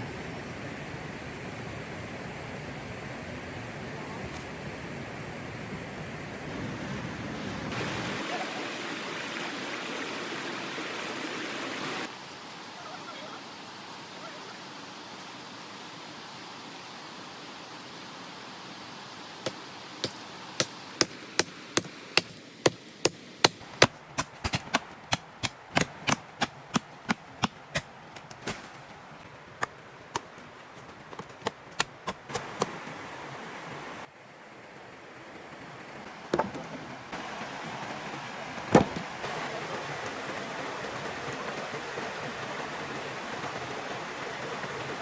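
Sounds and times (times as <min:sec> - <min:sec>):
running water: 0:06.5 - 0:23.9, 0:32.3 - 0:45.0
sharp chopping strikes: 0:19.4 - 0:28.6.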